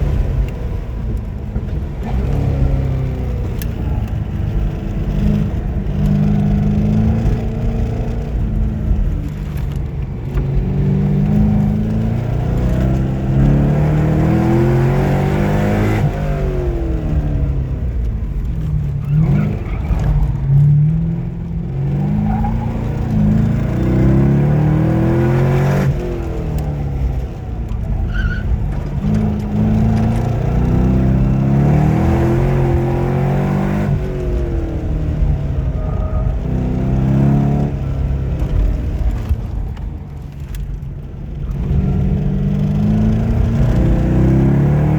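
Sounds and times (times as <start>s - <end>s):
car engine revving through upshifts: 0.0s - 44.9s.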